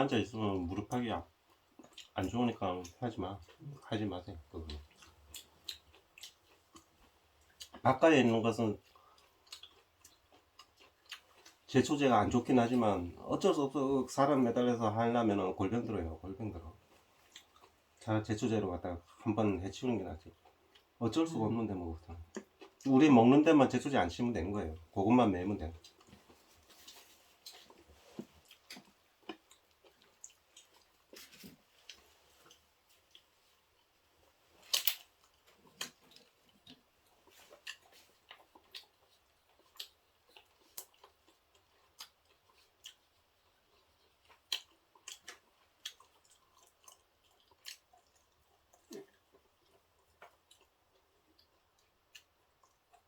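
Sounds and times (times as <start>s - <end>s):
chewing: 0.6s - 12.8s, 16.8s - 18.1s, 20.2s - 21.0s, 22.0s - 23.1s, 24.8s - 53.0s.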